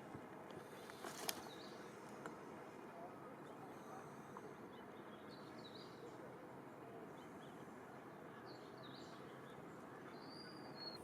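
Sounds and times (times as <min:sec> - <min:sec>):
outdoor background hiss: 0:00.0 - 0:11.0
faint bird chirps: 0:02.8 - 0:11.0.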